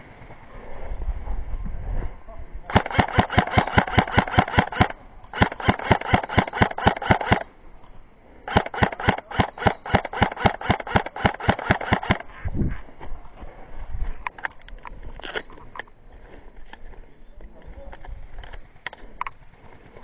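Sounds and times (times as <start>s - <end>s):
airsoft gun rapid shots: 2.7s - 7.5s, 8.5s - 12.3s.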